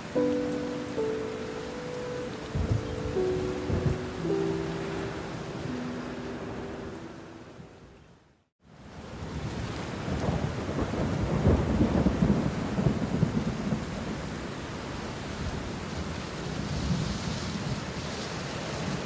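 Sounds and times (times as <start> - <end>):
steady rain: 0.0 - 19.0
rolling thunder: 2.5 - 4.2, 10.0 - 14.3.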